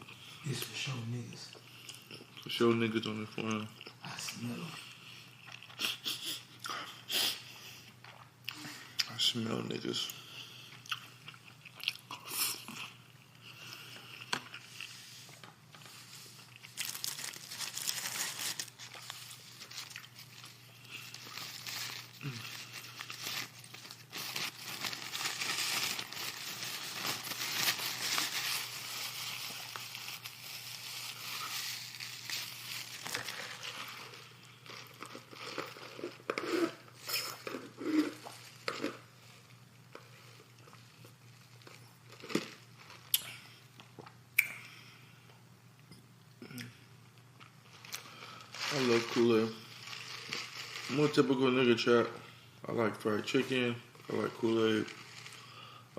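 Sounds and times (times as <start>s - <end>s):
crunching and chewing: 10.6s - 44.2s
food wrappers crinkling: 13.7s - 43.2s, 47.4s - 52.0s, 53.4s - 55.8s.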